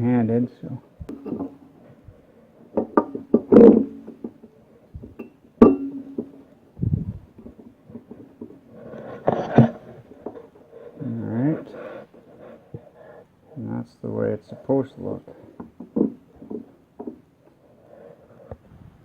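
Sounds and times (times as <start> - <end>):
metal clinks and knocks: 1.1 - 1.8, 2.7 - 6.5
sharp ringing metal clank: 5.2 - 6.3.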